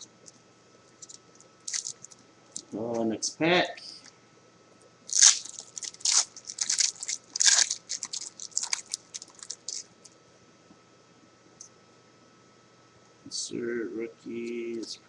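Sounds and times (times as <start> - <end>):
foil wrapper tearing and crinkling: 1.0 - 2.2, 5.1 - 9.9.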